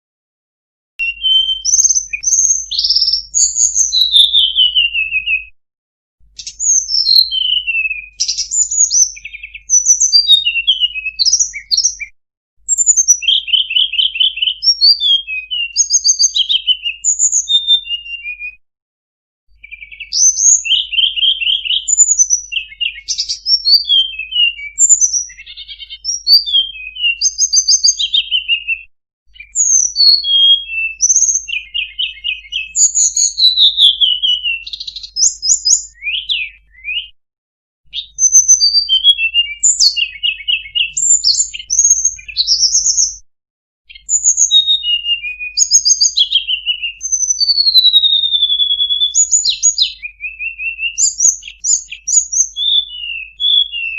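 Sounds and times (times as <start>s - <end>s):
songbird singing trills and whistles: 1.0s - 5.6s, 6.3s - 18.6s, 19.5s - 37.2s, 37.8s - 43.2s, 43.9s - 53.9s.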